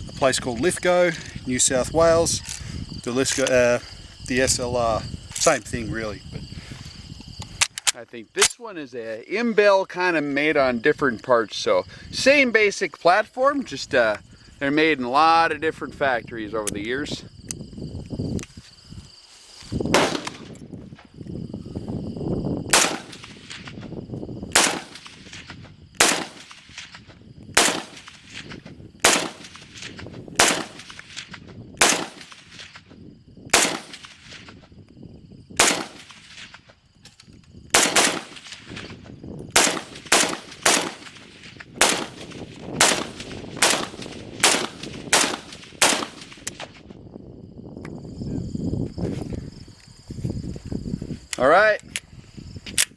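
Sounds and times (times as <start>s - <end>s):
rifle shots: 19.9s - 20.5s, 22.7s - 23.7s, 24.5s - 26.9s, 27.6s - 28.4s, 29.0s - 32.7s, 33.5s - 34.4s, 35.6s - 36.5s, 37.7s - 38.9s, 39.5s - 46.7s.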